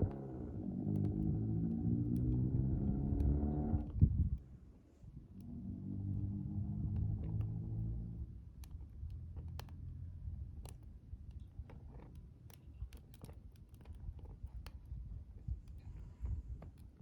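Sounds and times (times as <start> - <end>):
bonfire crackling: 0.2 - 3.9.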